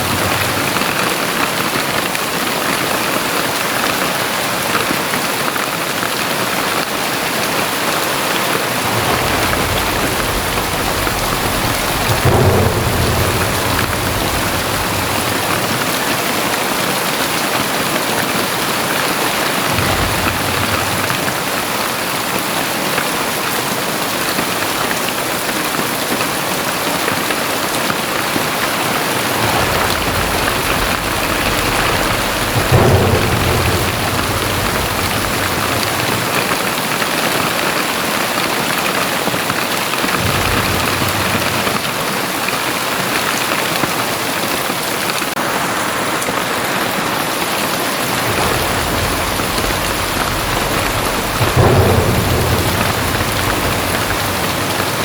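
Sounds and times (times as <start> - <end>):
deep low rumbles: 0.0 - 1.3, 8.6 - 17.2, 19.6 - 22.3, 28.7 - 37.0, 40.2 - 41.9, 48.1 - 55.0
heavy rain pouring: 0.0 - 55.0.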